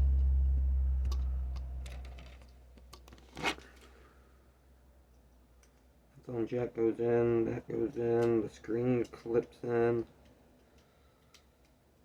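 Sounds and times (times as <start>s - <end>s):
low hum: 0.0s - 2.5s
small parts clicking and tapping: 9.0s - 11.8s.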